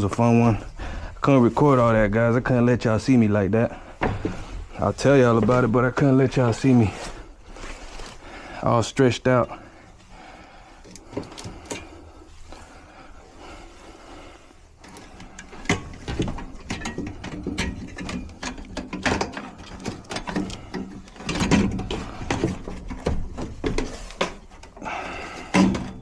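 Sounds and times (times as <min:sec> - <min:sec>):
metallic clatter of hand tools: 0:10.8 - 0:12.6, 0:14.5 - 0:26.0.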